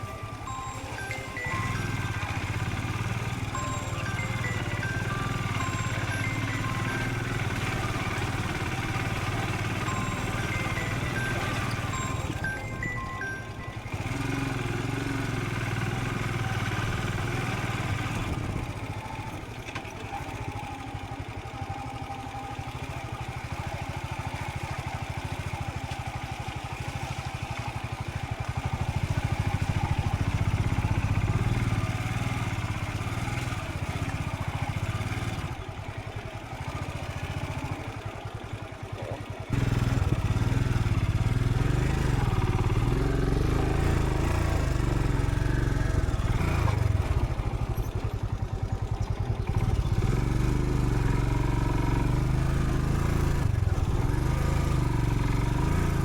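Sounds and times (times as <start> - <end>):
road and wind noise: 0.0 - 19.9, 39.5 - 56.0
motorcycle engine running: 0.0 - 56.0.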